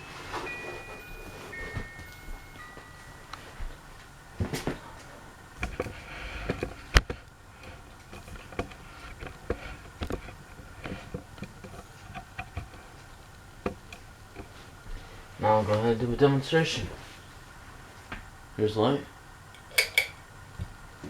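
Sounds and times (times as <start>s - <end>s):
clicks and light knocks: 0.3s - 15.1s.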